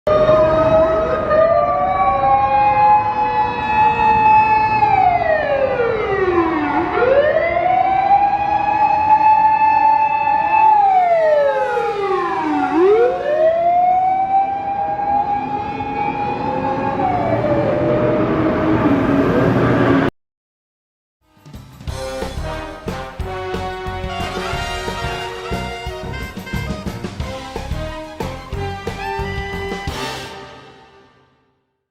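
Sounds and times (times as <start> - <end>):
electronic siren wailing: 0.1 - 20.1
motor siren wailing: 0.1 - 20.1.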